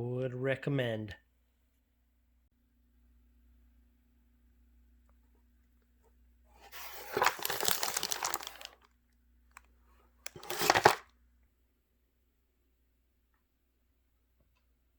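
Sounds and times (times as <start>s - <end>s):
packaging crinkling and rustling: 6.6s - 8.9s, 10.3s - 11.1s.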